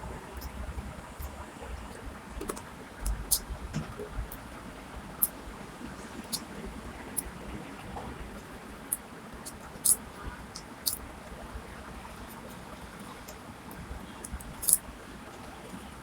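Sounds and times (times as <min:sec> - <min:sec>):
faint steady hiss: 0:00.0 - 0:16.0
crunching of crisp snacks: 0:13.7 - 0:14.8.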